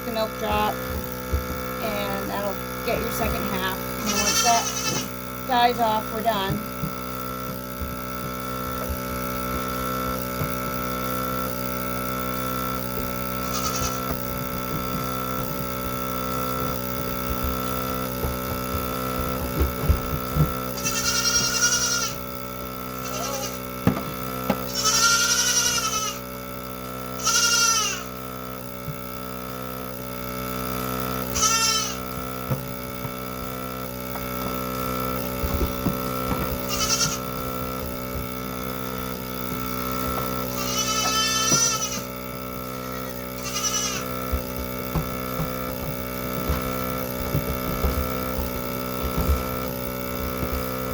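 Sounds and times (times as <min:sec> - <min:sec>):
milking machine humming and pulsing: 0:00.0 - 0:50.9
goat bleating: 0:01.9 - 0:05.2, 0:13.4 - 0:14.4, 0:20.8 - 0:22.2, 0:23.0 - 0:23.7, 0:24.6 - 0:26.2, 0:27.2 - 0:28.2, 0:31.3 - 0:32.2, 0:36.4 - 0:37.6, 0:40.5 - 0:44.4.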